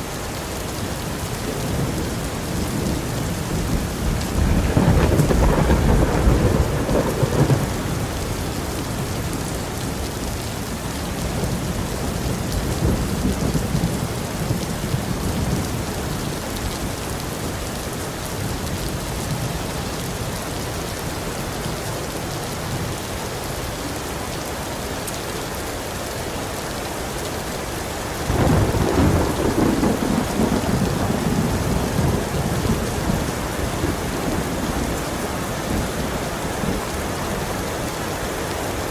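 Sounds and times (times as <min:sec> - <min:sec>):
heavy rain: 0:00.0 - 0:38.9
rolling thunder: 0:01.7 - 0:08.5, 0:28.3 - 0:36.9.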